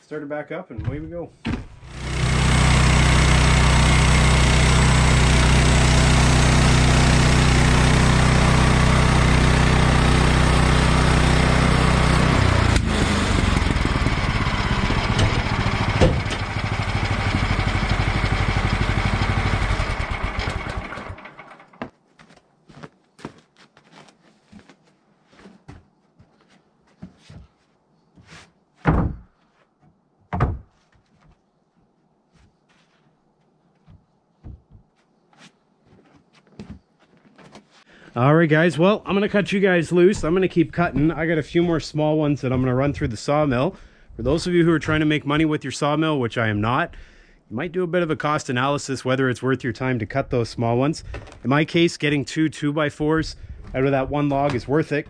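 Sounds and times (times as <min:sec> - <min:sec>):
gasoline engine running: 0:01.6 - 0:21.9
sharp knocks: 0:16.0 - 0:16.4.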